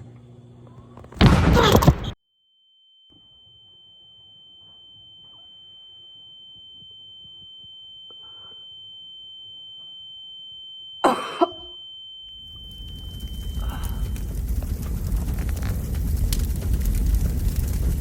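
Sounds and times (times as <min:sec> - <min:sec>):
sudden loud burst: 0:01.2 - 0:02.2, 0:12.3 - 0:18.0
high-pitched ringing tone: 0:02.3 - 0:14.3
faint low rumble: 0:12.3 - 0:18.0.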